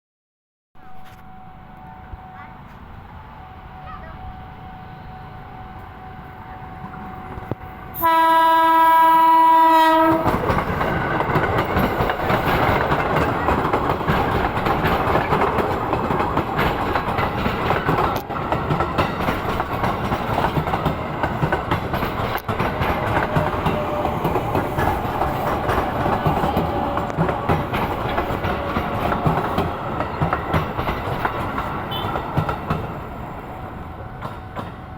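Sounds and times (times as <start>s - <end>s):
train rumble and wheel clatter: 0.8s - 34.9s
train horn blast: 3.5s - 10.5s, 22.7s - 24.5s, 31.8s - 32.4s.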